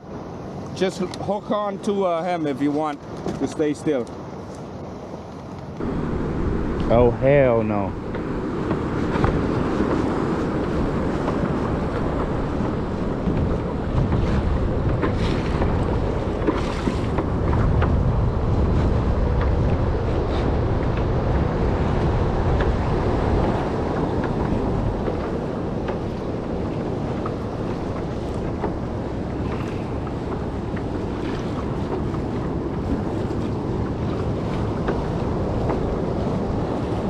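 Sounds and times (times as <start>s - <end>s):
sea water slapping a kayak: 0.0s - 37.0s
wind buffeting microphone: 0.0s - 37.0s.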